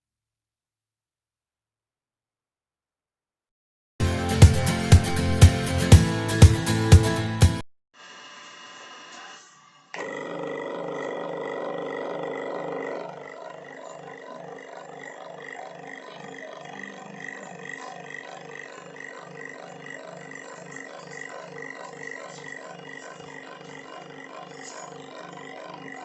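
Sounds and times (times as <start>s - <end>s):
table fan whirring: 10.0s - 26.0s.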